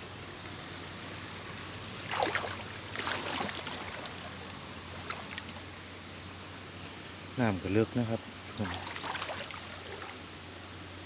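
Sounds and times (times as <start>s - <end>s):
steady background hiss: 0.0s - 11.0s
water splashing and sloshing: 0.6s - 6.0s, 8.3s - 10.3s.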